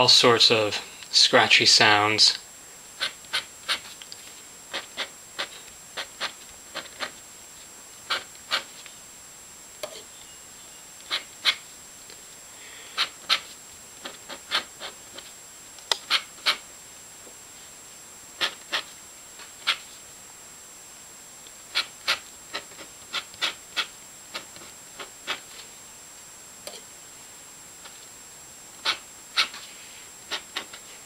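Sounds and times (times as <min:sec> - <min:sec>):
pen nib scratching paper: 0:03.0 - 0:04.0, 0:04.7 - 0:07.2, 0:08.1 - 0:08.8, 0:13.0 - 0:15.3, 0:16.0 - 0:16.6, 0:18.4 - 0:18.9, 0:19.6 - 0:19.9, 0:21.7 - 0:25.5, 0:28.8 - 0:29.7, 0:30.3 - 0:31.0.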